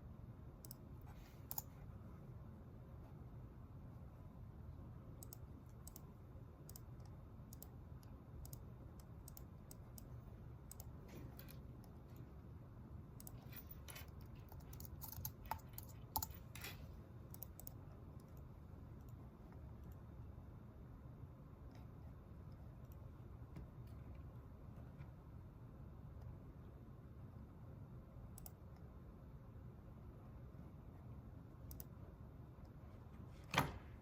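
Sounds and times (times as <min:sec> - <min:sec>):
low steady room hum: 0:00.0 - 0:34.0
computer keyboard typing: 0:00.6 - 0:01.8, 0:05.2 - 0:12.0, 0:13.2 - 0:19.2.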